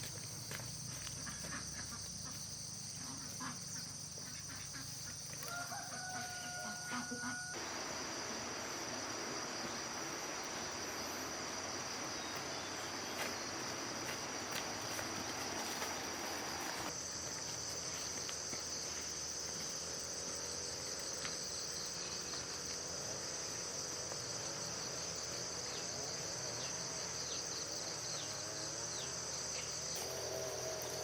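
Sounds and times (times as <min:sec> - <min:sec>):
high-pitched insect drone: 0:00.0 - 0:31.0
rooster crowing: 0:05.4 - 0:07.6.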